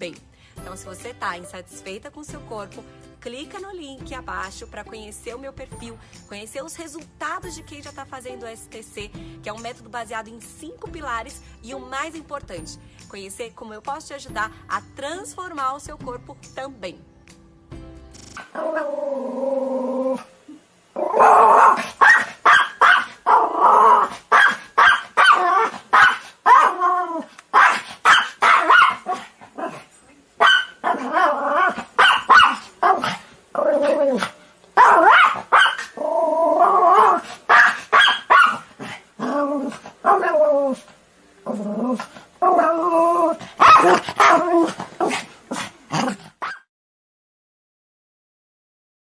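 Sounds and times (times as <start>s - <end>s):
dog barking rapidly: 21.1s - 26.9s, 27.5s - 29.8s, 30.4s - 33.2s, 33.8s - 36.0s, 36.6s - 38.9s, 40.0s - 40.4s, 43.6s - 45.3s, 46.0s - 46.7s.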